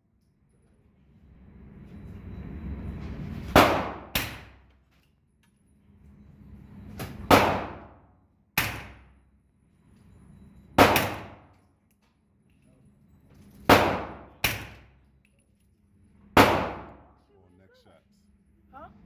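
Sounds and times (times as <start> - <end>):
rifle shots echoing: 3.6 - 4.4, 7.3 - 7.9, 10.8 - 11.4, 13.7 - 14.8, 16.4 - 17.1.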